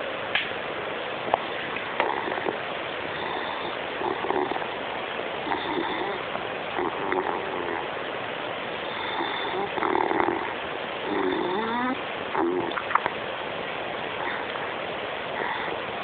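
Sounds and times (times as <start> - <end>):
steady hiss: 0.0 - 16.0
dog snoring: 1.8 - 4.8, 5.4 - 7.9, 8.8 - 12.8, 14.2 - 14.7, 15.3 - 15.9.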